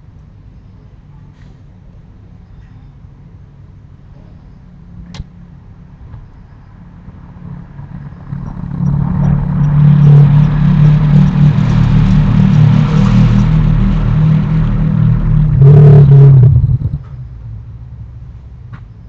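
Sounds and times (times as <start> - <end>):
motorcycle engine running: 6.8 - 18.6.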